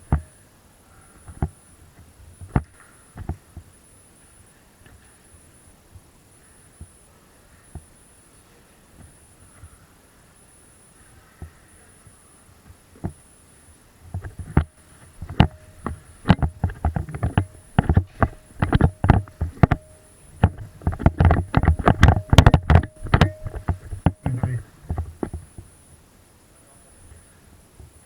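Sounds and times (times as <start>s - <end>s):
airsoft gun clacks and thumps: 14.1s - 25.7s.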